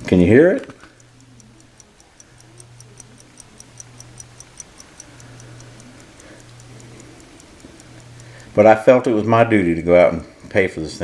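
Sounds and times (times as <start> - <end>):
pocket watch ticking: 0.0 - 11.0.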